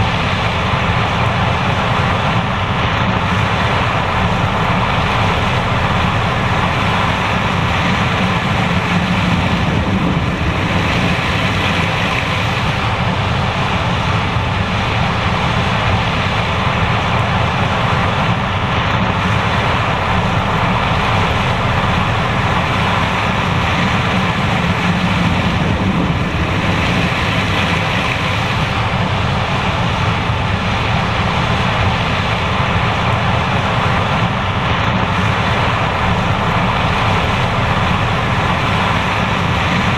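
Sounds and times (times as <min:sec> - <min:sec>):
combine harvester running: 0:00.0 - 0:39.9.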